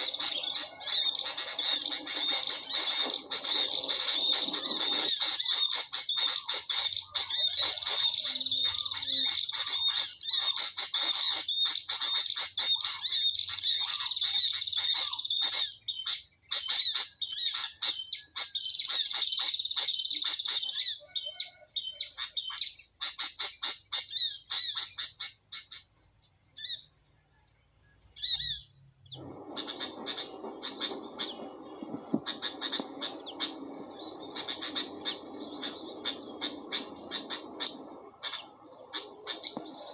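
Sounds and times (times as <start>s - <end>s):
small birds chirping: 0.0s - 39.9s
low steady noise: 28.8s - 39.9s.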